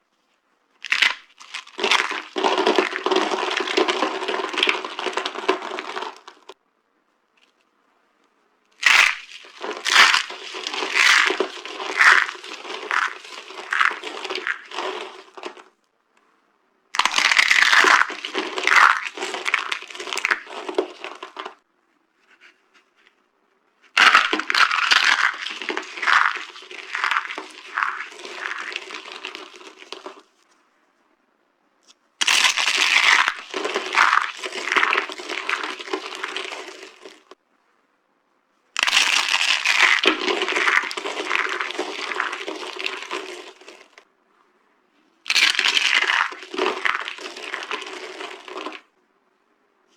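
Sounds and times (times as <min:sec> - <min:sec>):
dry soap crunching: 0:00.8 - 0:06.6, 0:08.7 - 0:15.8, 0:17.0 - 0:21.6, 0:23.9 - 0:30.3, 0:32.2 - 0:37.4, 0:38.8 - 0:44.0, 0:45.3 - 0:48.9.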